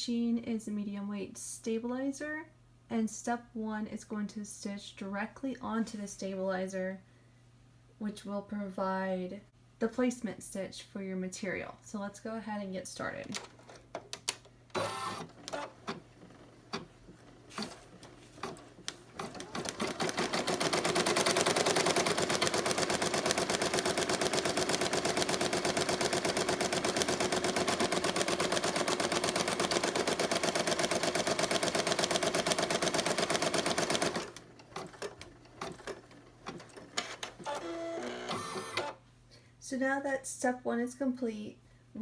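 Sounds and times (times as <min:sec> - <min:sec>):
embroidery machine stitching: 0:14.7 - 0:39.0.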